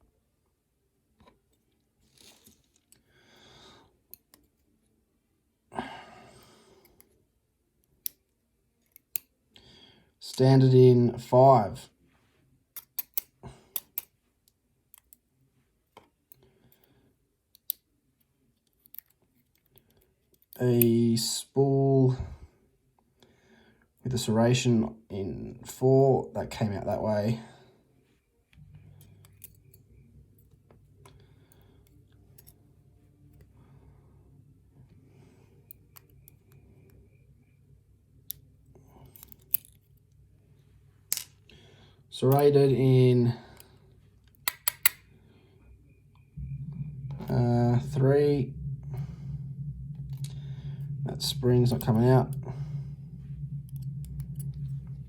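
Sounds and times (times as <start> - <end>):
metallic clicks of lock picking: 7.8 - 9.4, 12.8 - 15.3, 17.5 - 17.9, 18.6 - 21.0, 39.1 - 39.9, 44.3 - 45.1
small metal clicks and taps: 12.8 - 14.1, 18.6 - 20.6.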